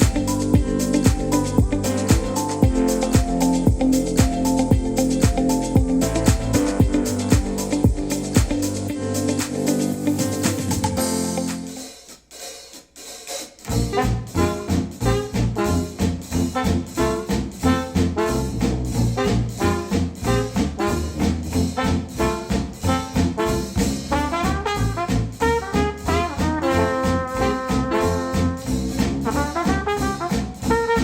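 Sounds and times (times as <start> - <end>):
brass over pulsing bass: 0.0 - 11.5, 13.7 - 31.0
music through speakers: 0.0 - 17.4.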